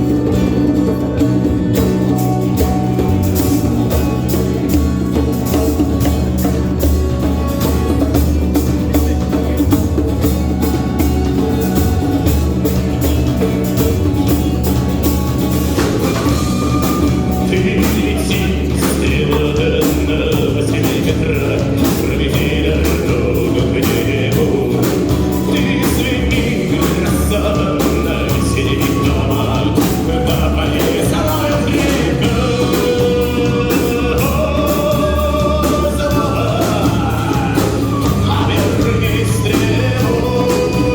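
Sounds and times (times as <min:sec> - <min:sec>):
live band drums and guitar: 0:00.0 - 0:40.9
person singing: 0:15.8 - 0:40.9.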